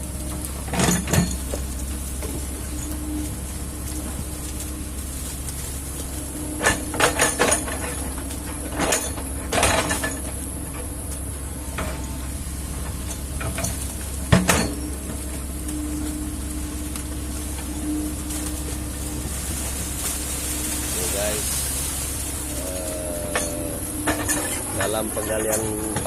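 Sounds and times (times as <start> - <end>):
excavator diesel engine running: 0.0 - 26.0
metallic clanks and knocks: 0.4 - 3.3, 6.2 - 19.4, 23.3 - 26.0.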